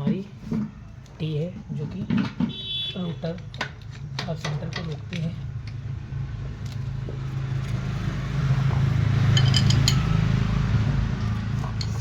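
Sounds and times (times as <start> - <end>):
vehicle engine running: 5.4 - 12.0
metallic clinks of tools: 9.3 - 10.1.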